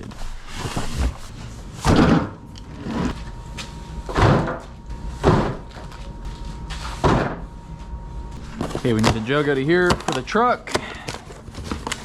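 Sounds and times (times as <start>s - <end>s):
heavy door thuds: 1.1s - 3.2s, 4.0s - 5.7s, 7.0s - 7.5s.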